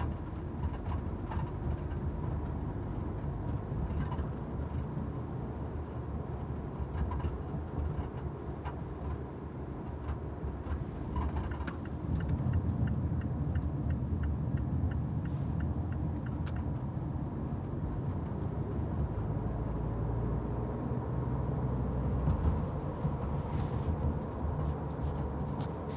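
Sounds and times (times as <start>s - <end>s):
tyre and road rumble: 21.5s - 25.9s.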